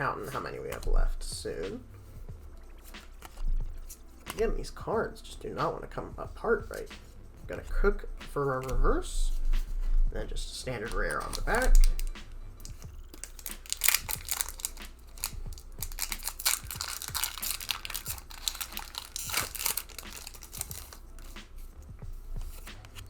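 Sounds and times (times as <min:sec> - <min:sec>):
foil wrapper crinkling and tearing: 0:11.0 - 0:21.4.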